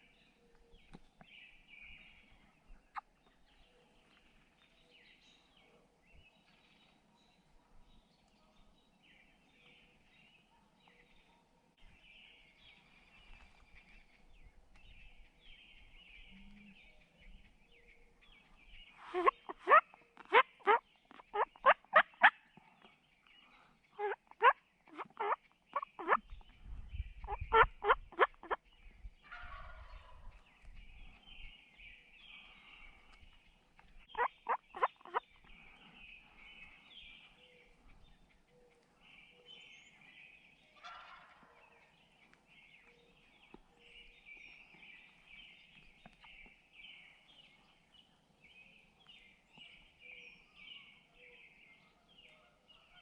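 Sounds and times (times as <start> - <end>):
faint songbird chirping: 0.0 - 53.0
wild turkey calling: 19.0 - 23.0, 23.9 - 26.4, 27.2 - 28.6, 29.2 - 30.2, 34.1 - 39.7, 40.8 - 41.9.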